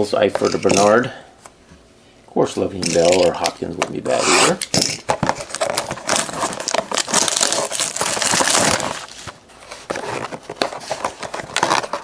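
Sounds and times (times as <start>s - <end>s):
packaging crinkling and tearing: 4.5s - 12.0s.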